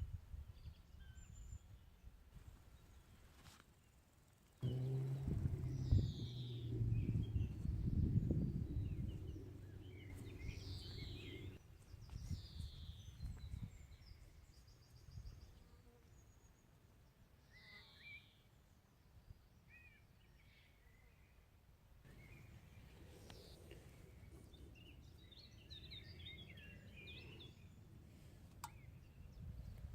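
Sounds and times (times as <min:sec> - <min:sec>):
bird trill: 0:04.6 - 0:11.6
low rumble: 0:04.6 - 0:11.6
birds whistling and chirping: 0:04.7 - 0:14.2.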